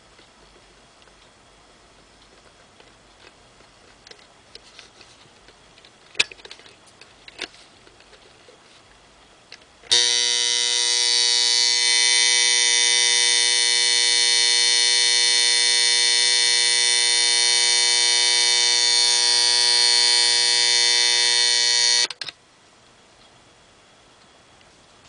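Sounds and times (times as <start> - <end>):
alarm clock buzzing: 9.9 - 22.2.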